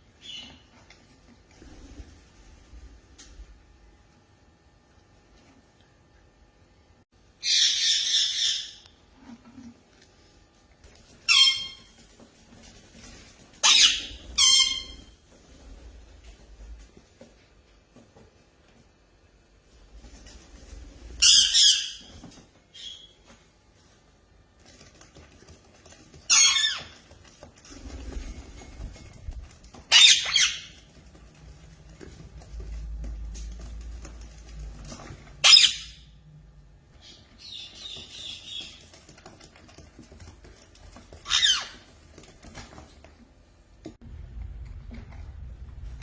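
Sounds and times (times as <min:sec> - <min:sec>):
parrot squawking: 0:07.4 - 0:08.9, 0:13.6 - 0:15.1, 0:21.2 - 0:22.1, 0:26.3 - 0:27.0, 0:29.9 - 0:30.9, 0:35.4 - 0:36.1, 0:41.2 - 0:41.9.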